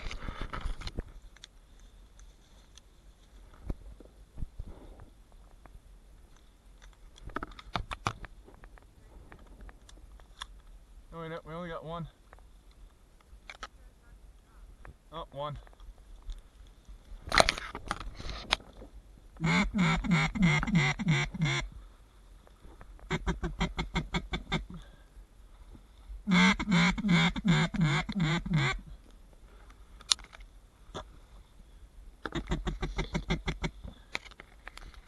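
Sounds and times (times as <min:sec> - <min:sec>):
duck quacking: 0:19.4 - 0:21.7, 0:23.1 - 0:24.8, 0:26.3 - 0:28.9.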